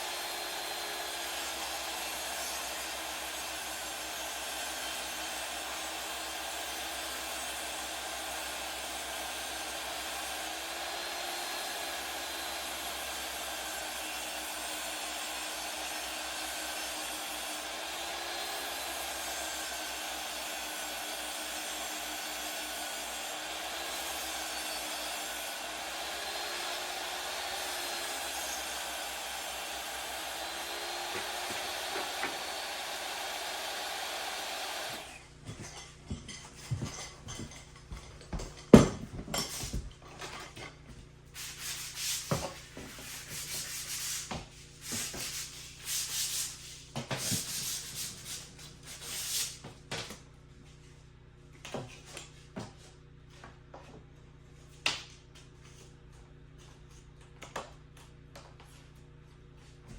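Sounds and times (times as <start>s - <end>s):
rubbing and scraping wood: 30.4s - 32.8s, 41.4s - 49.6s.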